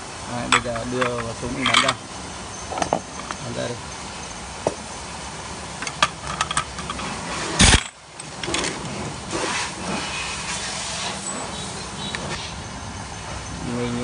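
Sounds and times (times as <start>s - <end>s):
metal tool clicks and clinks: 0.5s - 2.0s
pneumatic impact wrench burst: 7.2s - 8.0s.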